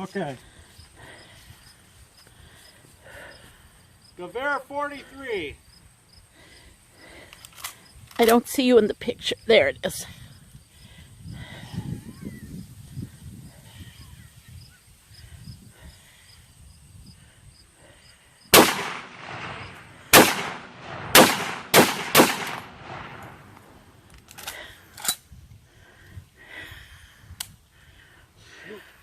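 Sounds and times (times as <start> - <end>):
rifle shots with echo: 18.5 - 23.8
faint sharp cracks: 18.6 - 25.2.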